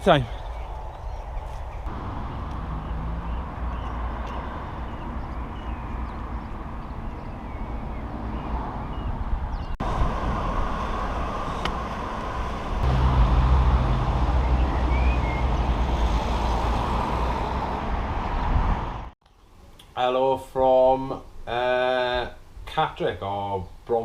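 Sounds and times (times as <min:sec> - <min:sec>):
road traffic roar: 0:01.8 - 0:19.2
close engine rumbling: 0:01.9 - 0:05.2, 0:09.8 - 0:19.2.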